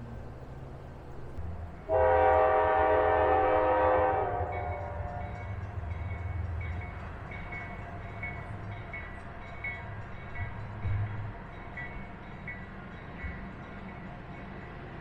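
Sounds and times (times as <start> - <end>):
passing train rumble: 0.0 - 15.0
crossing bell dinging: 4.4 - 14.8.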